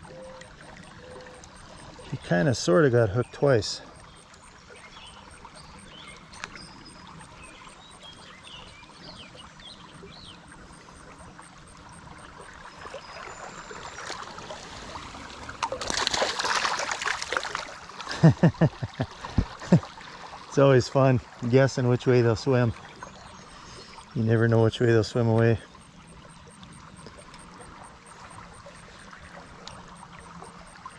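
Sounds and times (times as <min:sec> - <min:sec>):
creek water trickling: 0:00.0 - 0:30.9
fish splashing in water: 0:03.2 - 0:20.6
rush of splashing water: 0:09.6 - 0:25.3.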